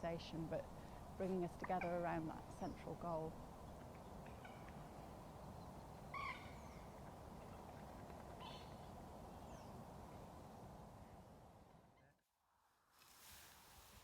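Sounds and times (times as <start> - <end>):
low outdoor hum: 0.0 - 12.2
bird call: 6.1 - 9.7.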